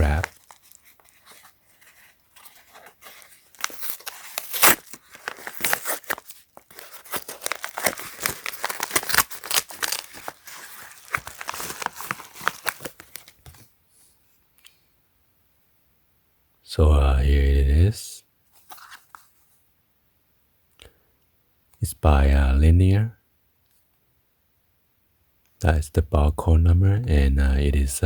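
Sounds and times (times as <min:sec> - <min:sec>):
padded mailer tearing: 0:00.0 - 0:13.5
plastic crinkling: 0:00.0 - 0:13.6.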